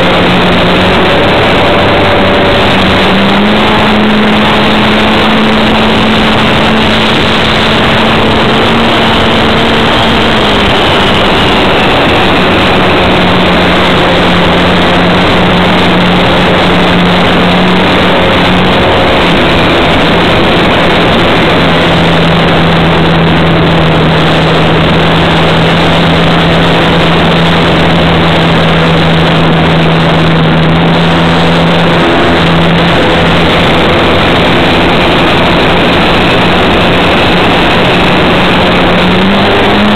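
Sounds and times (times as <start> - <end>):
model plane motor and propeller: 0.0 - 22.4
wind rushing over microphone: 0.0 - 39.9.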